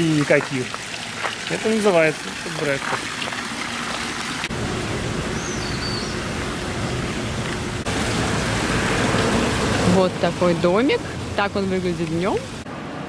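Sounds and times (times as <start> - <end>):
steady rushing noise: 4.5 - 13.0.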